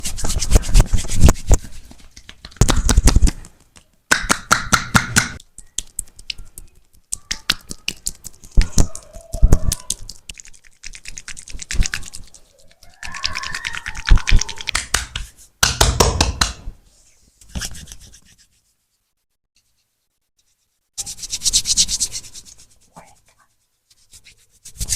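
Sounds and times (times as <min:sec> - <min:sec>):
hands slapping and rubbing skin: 0:00.0 - 0:16.6.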